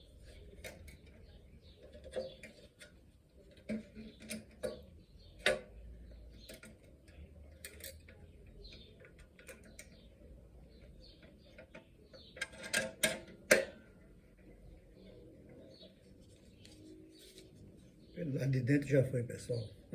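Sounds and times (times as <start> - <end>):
tools clicking and tapping on wood: 0.3 - 10.1, 10.8 - 14.0.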